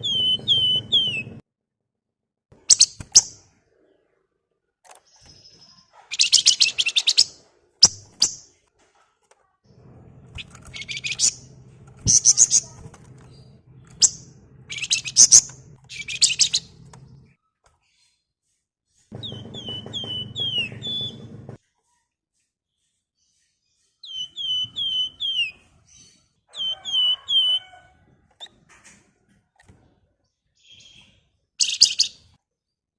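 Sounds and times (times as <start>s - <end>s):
birds rattling chatter: 0.0s - 1.4s, 4.9s - 8.6s, 9.2s - 18.2s, 18.9s - 21.6s, 22.9s - 30.0s, 30.6s - 32.3s
down-slurred whistled bird notes: 0.0s - 1.4s
low hum: 9.7s - 17.3s, 19.1s - 21.6s.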